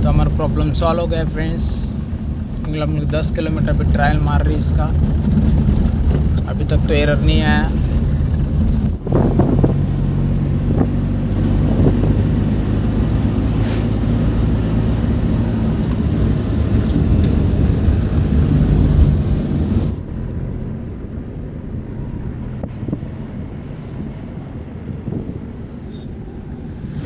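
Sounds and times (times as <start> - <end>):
car engine running: 0.0 - 27.0.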